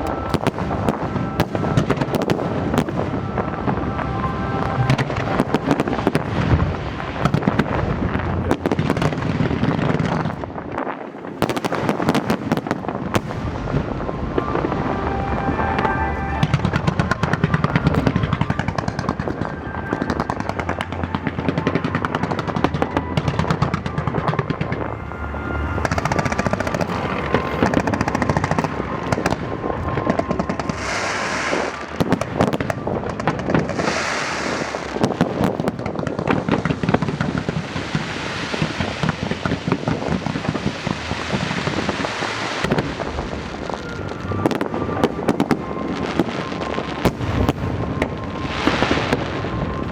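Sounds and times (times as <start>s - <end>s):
music playing: 0.0s - 8.7s, 13.2s - 35.0s
fireworks crackling and banging: 0.0s - 49.9s.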